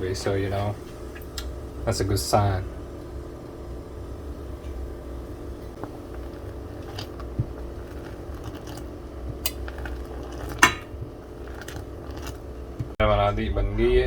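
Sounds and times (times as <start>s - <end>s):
steady low hum: 0.0s - 14.0s
pot and utensil clinks: 10.4s - 11.0s.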